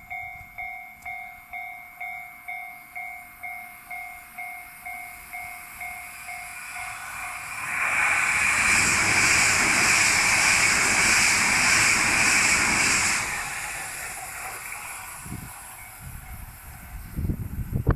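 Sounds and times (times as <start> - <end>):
train passing at speed: 0.0 - 17.9.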